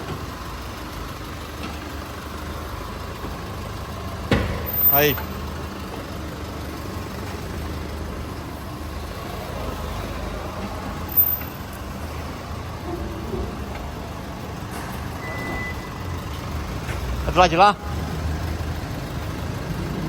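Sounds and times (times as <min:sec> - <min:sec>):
pickup engine rumbling: 0:00.0 - 0:20.0
brief high beep: 0:15.2 - 0:15.9.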